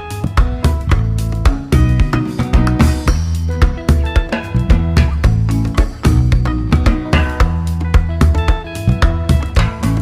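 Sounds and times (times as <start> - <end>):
plucked guitar over beat: 0.0 - 10.0
strong bass: 0.0 - 10.0.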